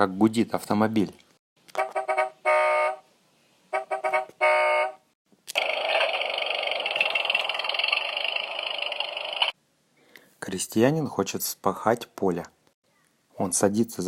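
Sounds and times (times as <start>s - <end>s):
car horn honking: 1.7s - 3.0s, 3.8s - 5.1s.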